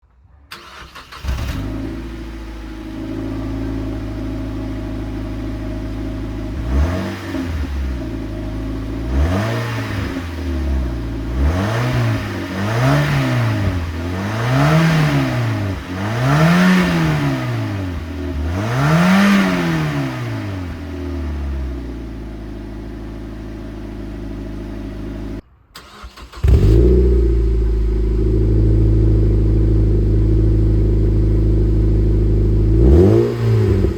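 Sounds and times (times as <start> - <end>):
car engine revving: 0.5 - 33.9
car engine starting and idling: 0.5 - 33.9.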